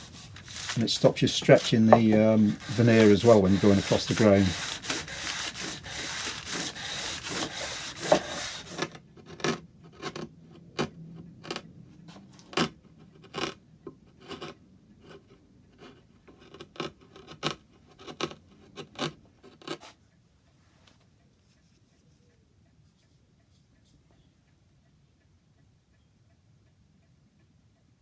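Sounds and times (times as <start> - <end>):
veneer hammer scraping paper: 0.0 - 12.7.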